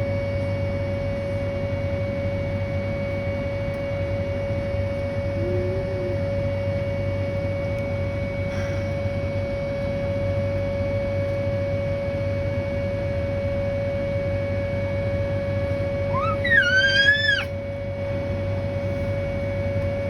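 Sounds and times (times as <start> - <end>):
warning siren steady tone: 4.7 - 8.3, 13.9 - 17.5
cat meowing loudly: 16.2 - 17.5.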